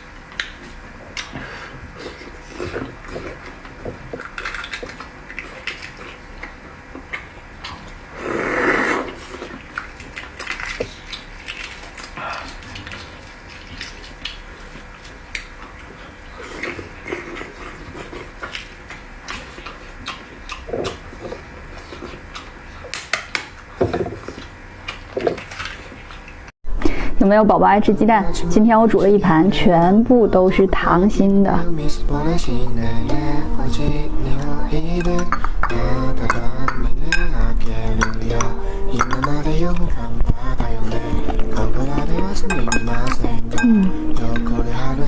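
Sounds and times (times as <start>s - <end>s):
chewing eggs: 0.2s - 26.5s, 31.8s - 45.0s
utensils clinking on a dish: 39.0s - 39.4s, 42.3s - 44.6s.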